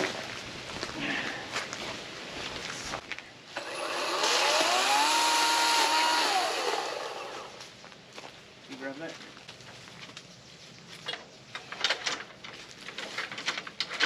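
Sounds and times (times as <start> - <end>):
power saw cutting branches: 3.6 - 7.6
rustling: 7.6 - 14.0.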